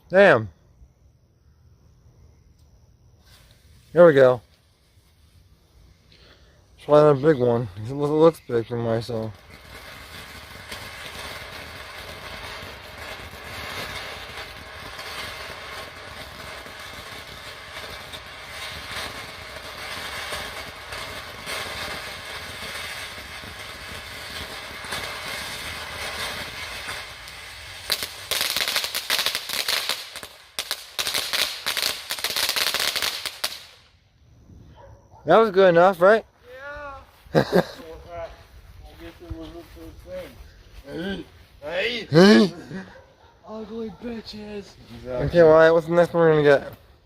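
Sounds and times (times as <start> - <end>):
firework fountain hissing: 3.2 - 34.2, 36.4 - 42.5
firework rapid crackling: 6.8 - 34.0.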